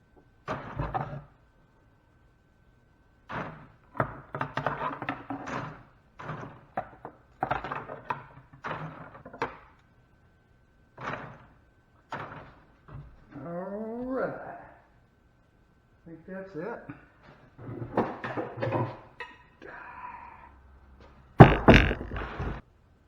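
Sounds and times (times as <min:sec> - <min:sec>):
sharp knocks and clicks: 0:21.4 - 0:22.6.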